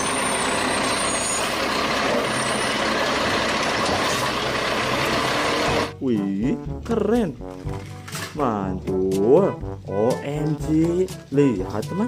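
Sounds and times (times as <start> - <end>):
faint high squeal: 0.0 - 2.8
truck engine and machinery: 0.0 - 6.0.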